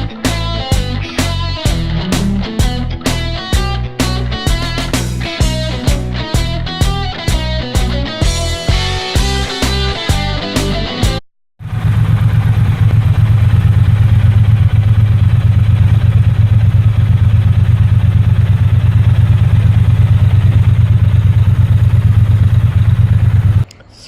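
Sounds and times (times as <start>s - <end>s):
motorcycle engine idling: 11.6s - 23.7s.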